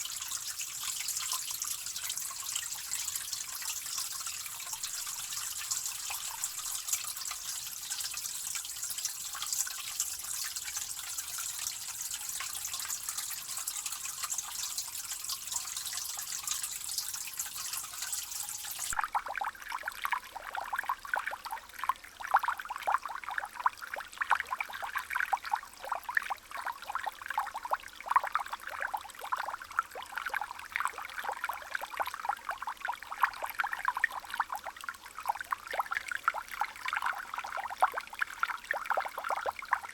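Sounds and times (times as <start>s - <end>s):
plinking water drips: 0.0s - 39.9s
running water hiss: 4.6s - 7.7s.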